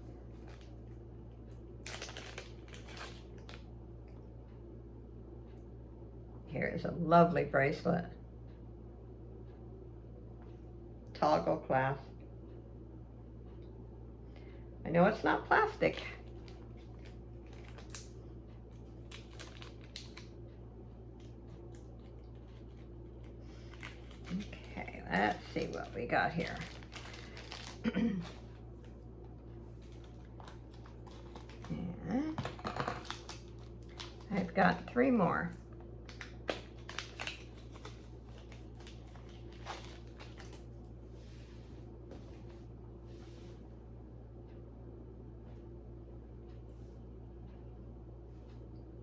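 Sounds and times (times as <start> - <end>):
steady low hum: 0.0 - 49.0
jewelry and packaging rustling: 1.8 - 3.6, 16.2 - 18.0, 18.7 - 20.2, 22.0 - 28.9, 29.8 - 31.8, 32.4 - 34.7, 36.5 - 40.9.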